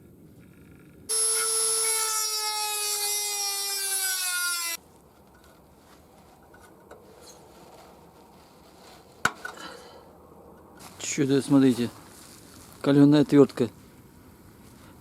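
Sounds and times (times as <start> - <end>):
power tool motor whining: 1.1 - 4.8.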